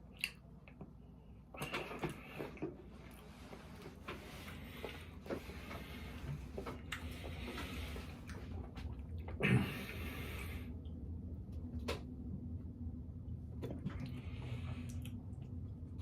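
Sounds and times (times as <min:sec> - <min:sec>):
wet mouth clicks: 0:00.2 - 0:00.4.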